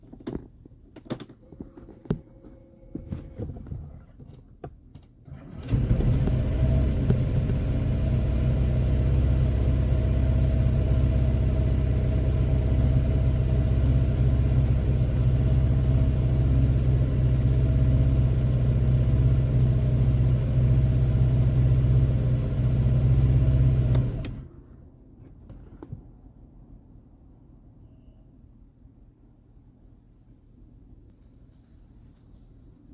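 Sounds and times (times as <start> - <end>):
scooter starter cranking engine: 5.3 - 8.0.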